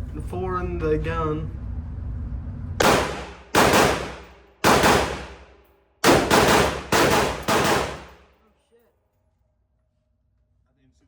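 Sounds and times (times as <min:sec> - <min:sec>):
gunshots echoing indoors: 0:02.8 - 0:08.3.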